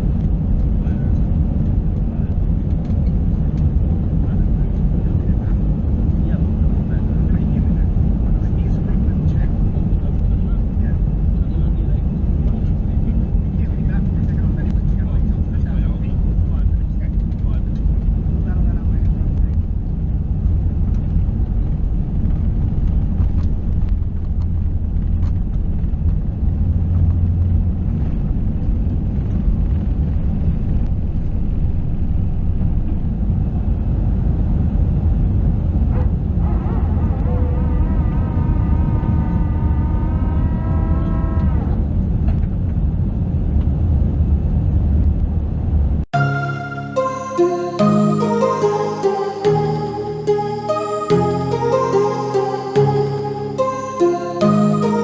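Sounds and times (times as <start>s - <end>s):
aircraft cabin low rumble: 0.0s - 36.4s.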